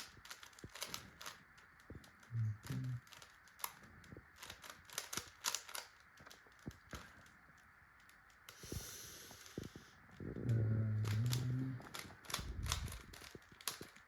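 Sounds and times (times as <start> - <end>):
puzzle cube clicking: 0.0 - 14.0
low hum: 1.6 - 3.1, 6.6 - 13.8.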